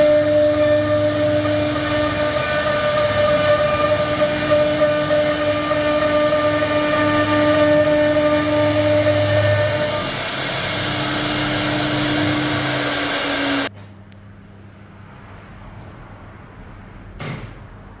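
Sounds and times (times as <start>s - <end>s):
cnc router whining: 0.0s - 13.7s.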